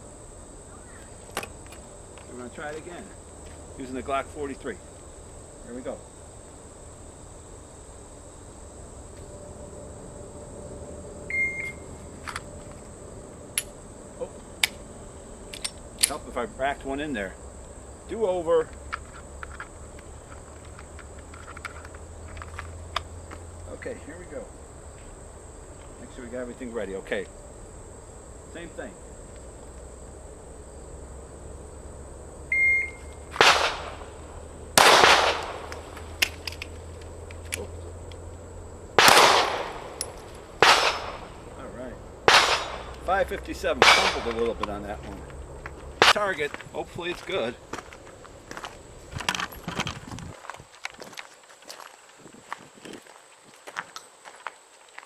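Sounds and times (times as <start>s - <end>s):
shot timer beep: 11.3s - 11.8s, 32.5s - 33.1s
pistol trigger clicks: 14.6s - 14.8s, 32.5s - 37.7s, 39.0s - 41.5s, 42.3s - 43.1s.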